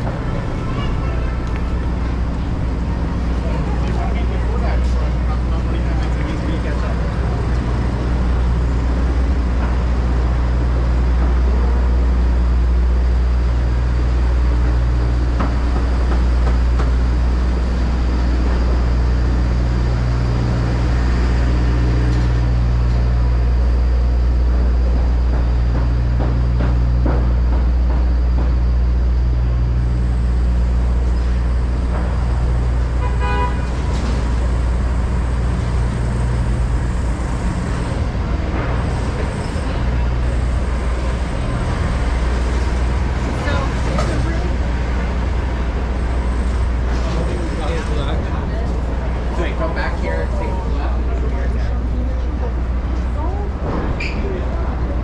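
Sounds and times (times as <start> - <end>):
vehicle engines rumbling: 0.0 - 55.0
car horn: 32.9 - 34.0.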